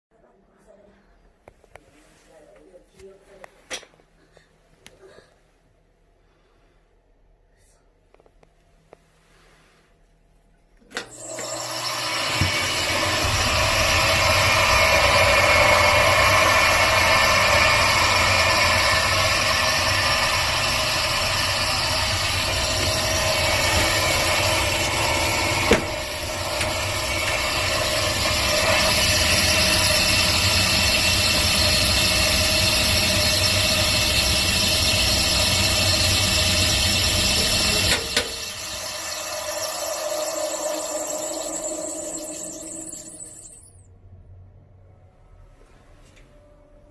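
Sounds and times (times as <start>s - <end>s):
range hood fan motor whining: 11.0s - 43.6s.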